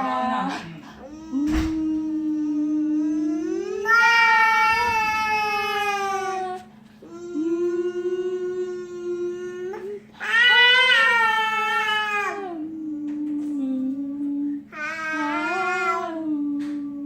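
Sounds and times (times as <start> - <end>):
faint steady hum: 0.0 - 17.0
child and woman singing ooh notes: 1.2 - 4.0, 7.0 - 11.2, 12.0 - 17.0.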